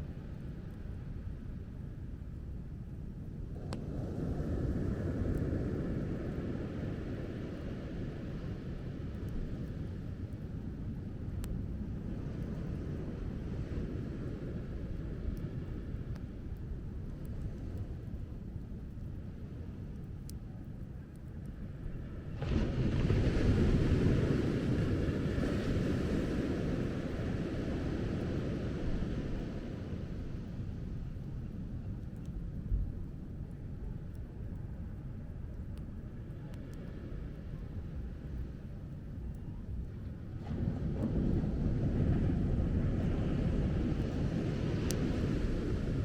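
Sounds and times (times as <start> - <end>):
wind rumble on microphone: 0.0 - 46.0
wave breaking on shore: 22.4 - 29.9.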